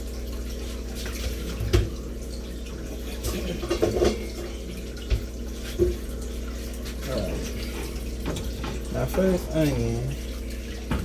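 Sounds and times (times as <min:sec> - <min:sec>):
kitchen things clattering: 0:03.2 - 0:06.0.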